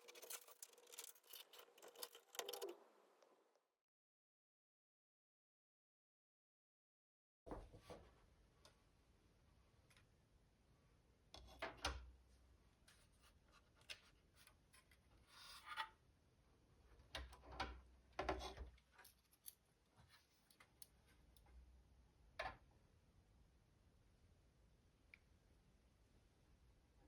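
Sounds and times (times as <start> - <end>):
rubbing or scraping sounds: 0.0 - 2.8.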